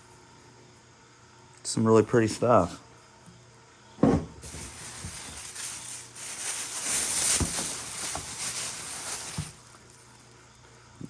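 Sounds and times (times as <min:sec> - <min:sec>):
packing wrapping crinkling: 0:04.4 - 0:10.2.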